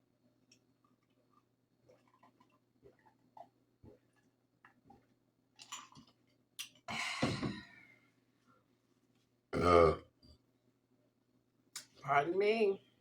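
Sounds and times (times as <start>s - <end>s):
woman burping: 9.6s - 10.0s.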